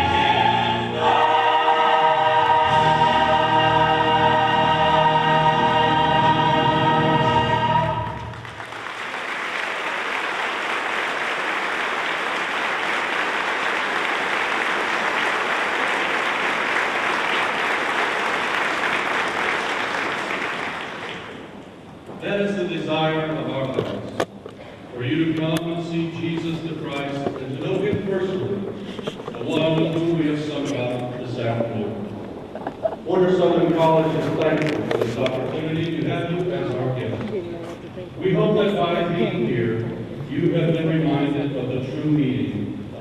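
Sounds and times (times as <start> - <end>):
choir singing held chord: 0.0 - 8.5
audience applause: 8.0 - 21.6.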